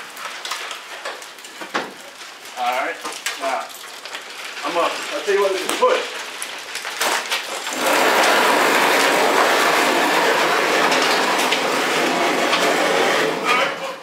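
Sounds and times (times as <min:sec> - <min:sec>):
truck bed scraping on ground: 0:07.6 - 0:13.9.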